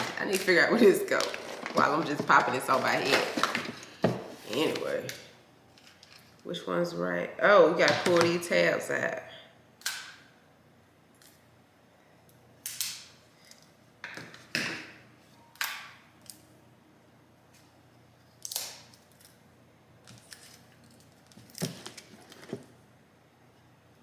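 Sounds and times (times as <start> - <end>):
plastic packaging scrapes and clicks: 0.0 - 3.9.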